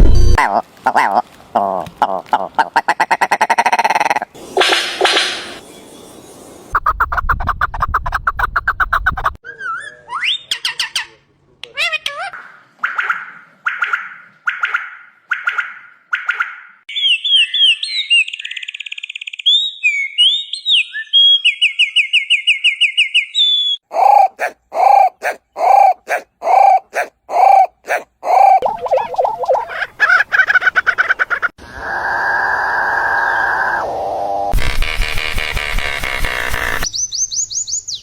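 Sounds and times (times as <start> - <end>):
bird calls: 8.8 - 31.4.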